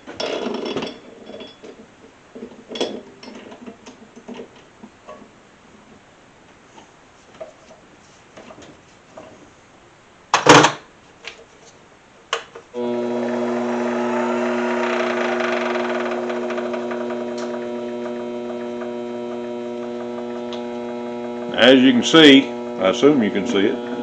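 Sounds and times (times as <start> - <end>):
lathe motor humming: 12.8 - 24.0.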